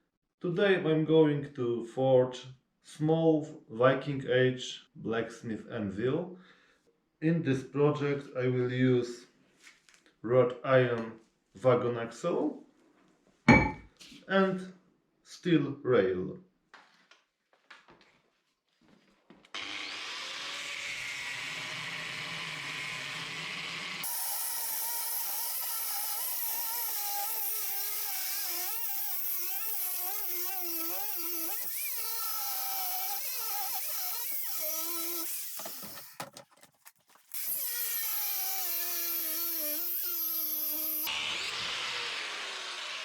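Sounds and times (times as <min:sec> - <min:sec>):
electric power tool on steel: 0:19.6 - 0:36.4, 0:37.3 - 0:43.0.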